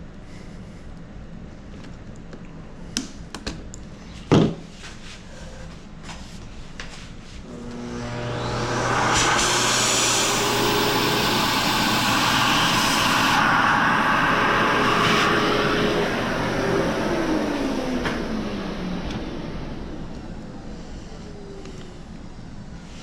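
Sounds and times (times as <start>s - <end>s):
rotary tool whine: 7.4s - 20.1s
cutting wheel grinding: 7.5s - 18.0s.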